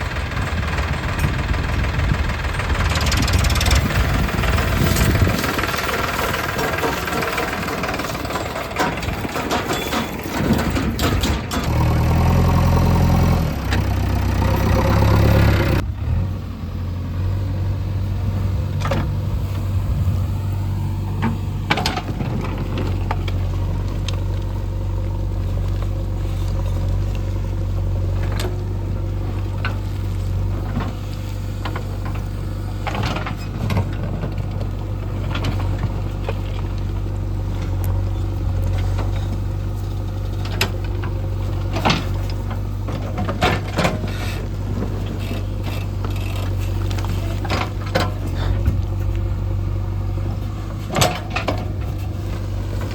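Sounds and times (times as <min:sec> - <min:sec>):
heavy diesel engine: 0:00.0 - 0:52.9.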